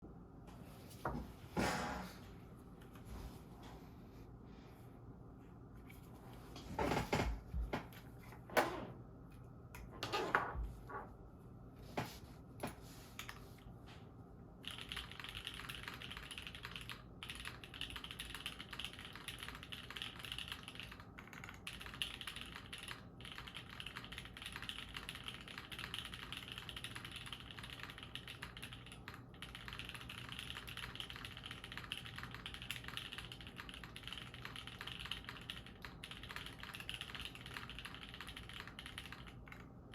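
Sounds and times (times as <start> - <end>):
mechanical keyboard typing: 14.6 - 39.7.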